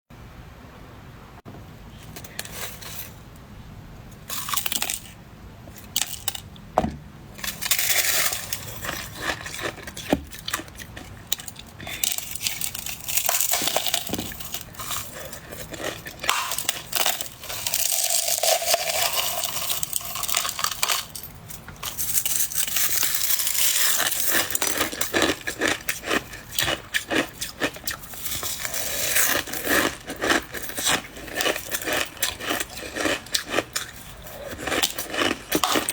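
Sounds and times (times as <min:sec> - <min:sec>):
crunching of ice: 0:07.4 - 0:35.9.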